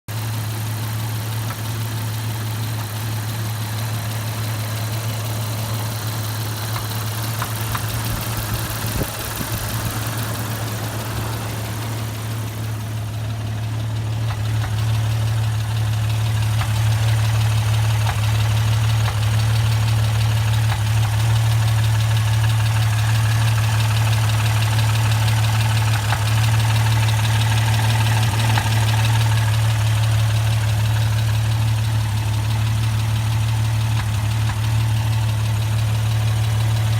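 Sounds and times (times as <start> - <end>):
car engine idling: 0.1 - 36.9
engine knocking: 0.1 - 36.9.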